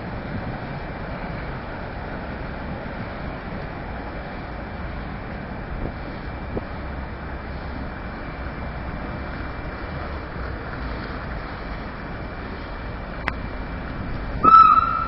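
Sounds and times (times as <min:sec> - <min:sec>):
train running: 0:00.0 - 0:15.0
loud high steady tone: 0:14.4 - 0:15.0.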